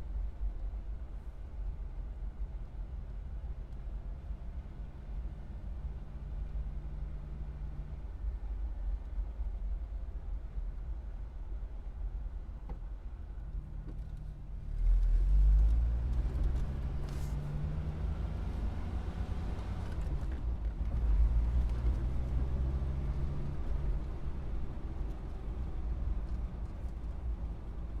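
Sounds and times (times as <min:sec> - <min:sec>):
road rumble: 0:00.0 - 0:28.0
car engine pulling away: 0:14.7 - 0:25.0.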